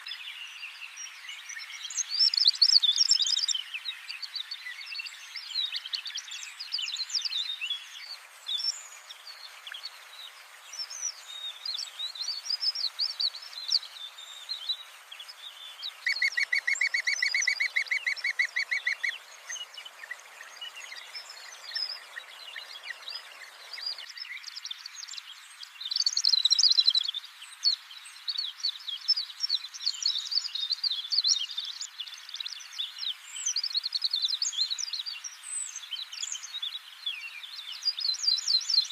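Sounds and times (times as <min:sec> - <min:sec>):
background hiss: 0:00.0 - 0:38.9
birds calling and chirping: 0:00.0 - 0:38.9
fast repeated bird trill: 0:15.9 - 0:24.0.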